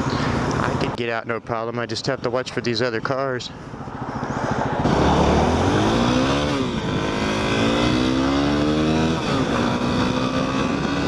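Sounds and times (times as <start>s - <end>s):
motorcycle engine accelerating: 3.6s - 11.0s.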